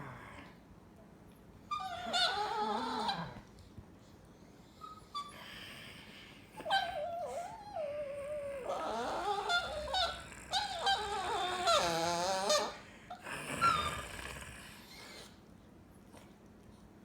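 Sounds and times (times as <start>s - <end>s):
small dog squealing and whining: 1.7s - 3.4s, 6.6s - 12.8s.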